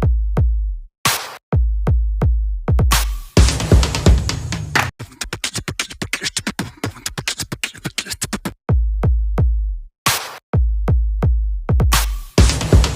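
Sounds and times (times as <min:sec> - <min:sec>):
snare-like snap: 0:01.1 - 0:01.4, 0:10.1 - 0:10.4, 0:12.0 - 0:12.3
electronic music with drum machine beat: 0:02.8 - 0:09.3, 0:10.1 - 0:12.9
ticking hi-hats: 0:02.9 - 0:08.6, 0:11.9 - 0:12.9.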